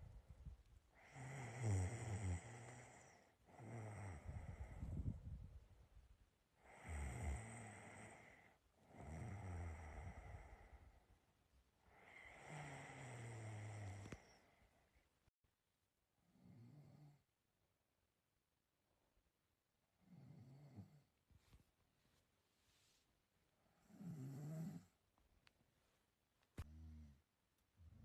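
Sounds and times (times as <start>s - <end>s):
person snoring: 1.0s - 5.1s, 6.6s - 10.8s, 11.9s - 14.5s, 23.9s - 24.9s, 26.6s - 27.2s.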